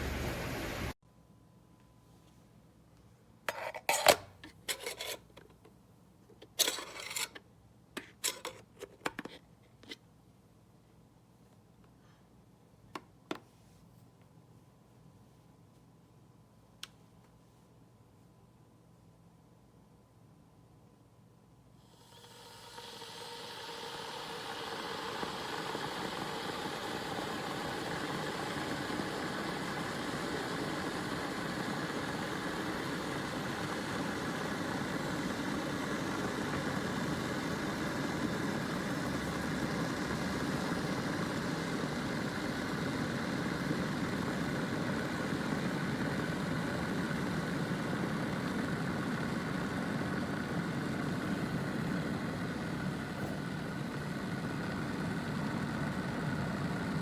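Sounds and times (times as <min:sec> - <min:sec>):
electric kettle heating water: 0:00.0 - 0:01.0, 0:21.8 - 0:57.0.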